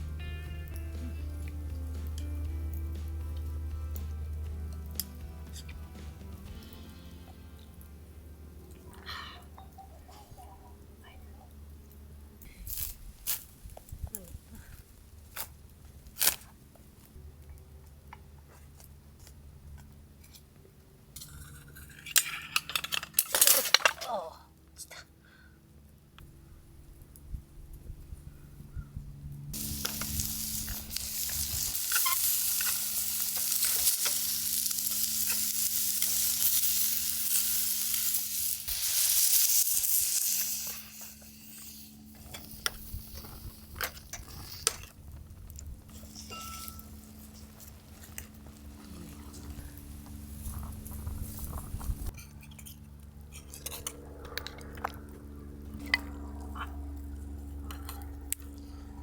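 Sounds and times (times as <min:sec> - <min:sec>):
food sizzling: 0:29.6 - 0:44.7.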